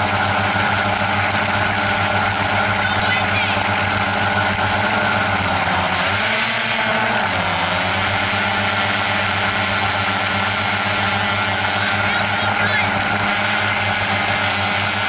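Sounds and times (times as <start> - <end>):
drone propellers buzzing: 0.0 - 15.0.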